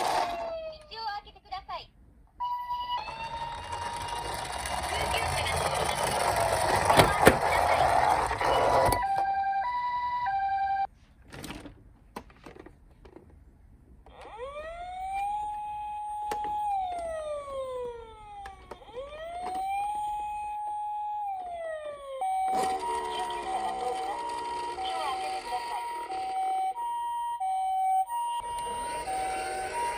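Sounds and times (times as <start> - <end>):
two-tone toy ambulance siren: 0.0 - 0.9, 2.4 - 10.9, 14.1 - 29.9
electronic wailing siren: 2.4 - 10.9, 14.1 - 29.9.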